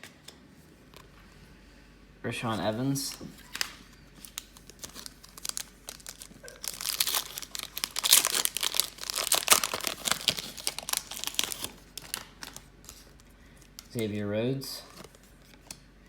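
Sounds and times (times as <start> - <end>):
foil wrapper crinkling and tearing: 3.0 - 14.0.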